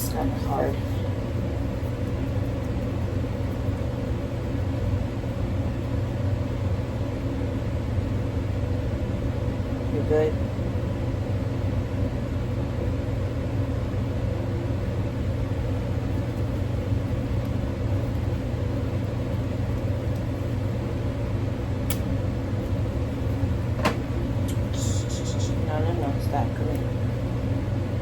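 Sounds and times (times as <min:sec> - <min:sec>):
motor humming: 0:15.2 - 0:28.0.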